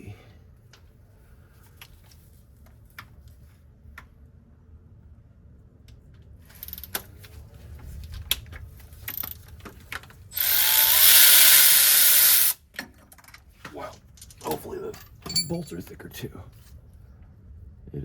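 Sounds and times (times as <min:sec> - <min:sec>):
ratchet clicks: 0:06.5 - 0:07.0, 0:10.4 - 0:12.6
power ratchet running: 0:10.4 - 0:12.6.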